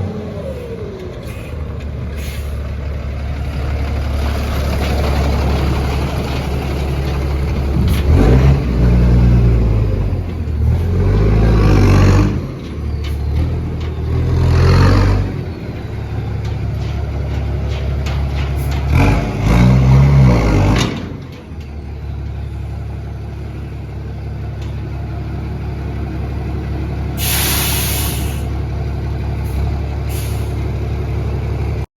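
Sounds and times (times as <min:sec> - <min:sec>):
diesel truck engine revving: 0:00.0 - 0:31.9
air brake hiss: 0:00.6 - 0:01.6, 0:02.2 - 0:02.6, 0:27.2 - 0:28.6, 0:29.4 - 0:30.6.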